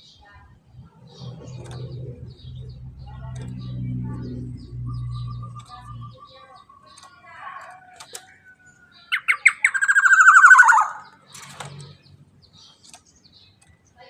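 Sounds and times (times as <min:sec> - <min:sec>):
faint bird chirps: 0:00.0 - 0:14.0
oriole calling: 0:04.6 - 0:11.2.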